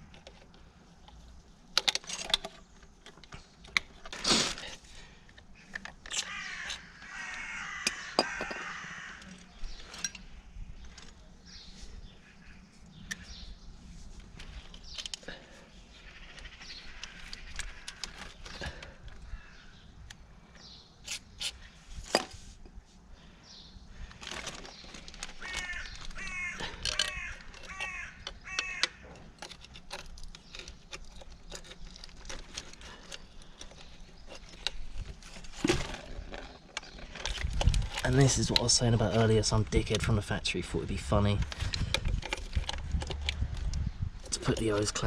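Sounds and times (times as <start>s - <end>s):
bird calling: 4.2s - 13.7s, 14.8s - 21.8s, 23.2s - 29.5s
clicks and knocks of hand work: 24.2s - 38.7s.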